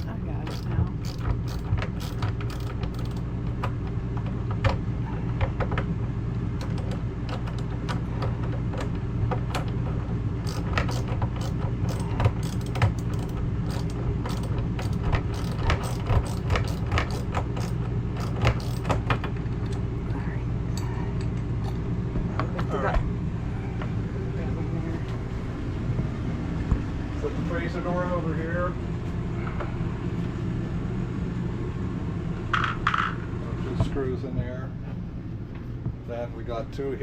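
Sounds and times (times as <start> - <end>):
ratchet and bolts clicking: 0.0 - 3.3, 10.4 - 19.0
steady low hum: 0.0 - 37.0.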